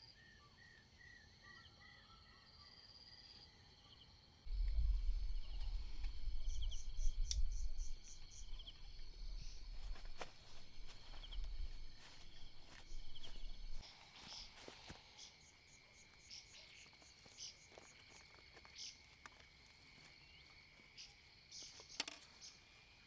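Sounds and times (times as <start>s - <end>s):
forest background: 0.0s - 23.0s
insects chirping in pulses: 3.9s - 23.0s
strong low rumble: 4.5s - 13.9s.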